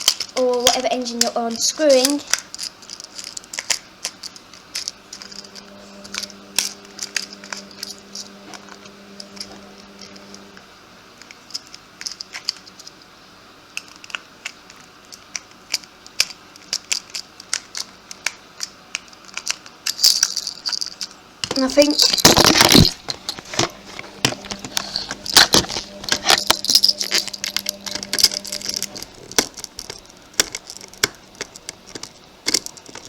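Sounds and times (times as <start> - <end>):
low steady hum: 0.0 - 11.4, 21.4 - 33.0
screwdriver scraping and clicking: 22.3 - 33.0.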